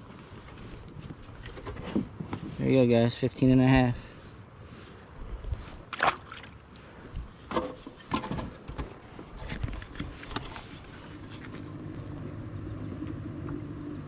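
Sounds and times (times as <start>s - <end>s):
low motor hum: 8.6s - 14.0s.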